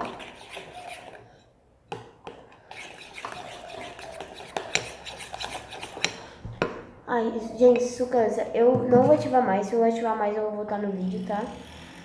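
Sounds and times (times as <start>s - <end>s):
utensil stirring sticky slime: 0.0s - 1.3s, 2.3s - 6.4s.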